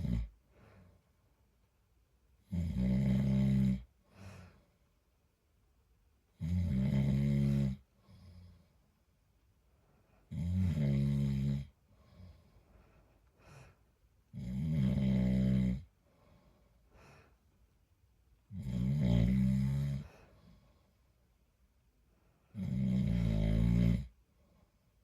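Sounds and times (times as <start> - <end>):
man snoring: 0.0 - 0.3, 2.5 - 3.9, 6.4 - 8.4, 10.3 - 11.7, 14.3 - 15.9, 18.5 - 20.1, 22.5 - 24.1.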